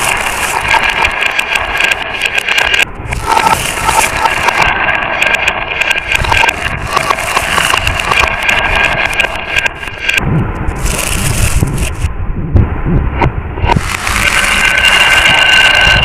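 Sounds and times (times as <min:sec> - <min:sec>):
marbles clattering down track: 0:00.0 - 0:10.2, 0:13.7 - 0:16.0.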